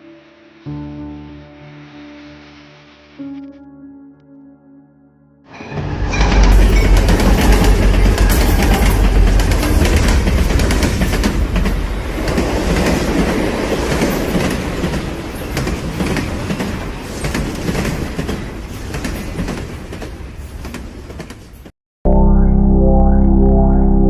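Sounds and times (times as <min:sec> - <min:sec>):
music with sustained tones: 0:00.0 - 0:09.0
train wheels clattering: 0:05.8 - 0:21.7.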